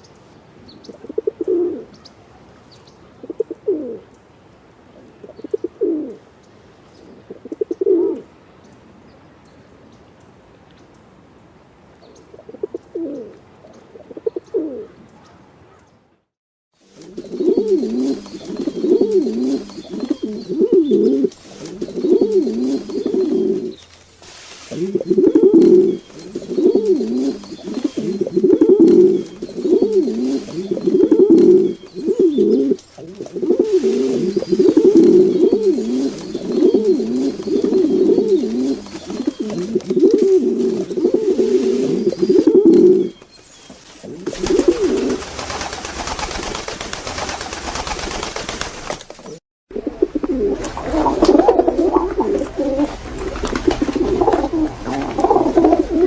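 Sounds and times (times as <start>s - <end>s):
pigeons cooing: 0.8s - 4.1s, 5.0s - 6.2s, 7.0s - 8.3s, 12.3s - 15.9s, 16.9s - 23.9s, 24.6s - 48.6s, 49.2s - 56.0s
hissing noise: 21.2s - 27.9s, 32.9s - 39.3s.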